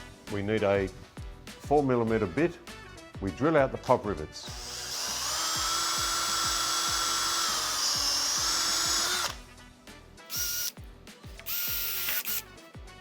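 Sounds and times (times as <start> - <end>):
power drill drilling: 4.4 - 9.4, 10.3 - 10.7, 11.4 - 12.4.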